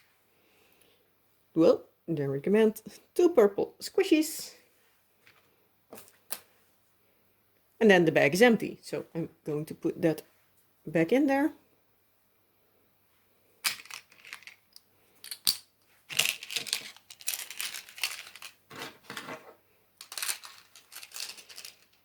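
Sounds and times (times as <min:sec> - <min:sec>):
plastic bags crinkling: 0:13.7 - 0:14.6, 0:16.1 - 0:19.1, 0:20.0 - 0:22.0.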